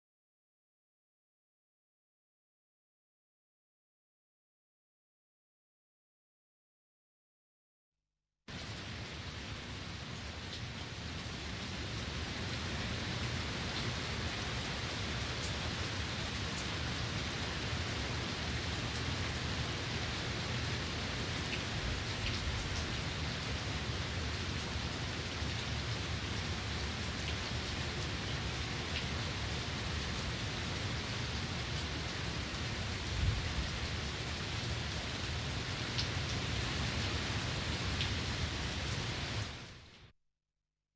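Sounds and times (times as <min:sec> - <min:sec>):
steady rain falling: 0:08.5 - 0:40.1.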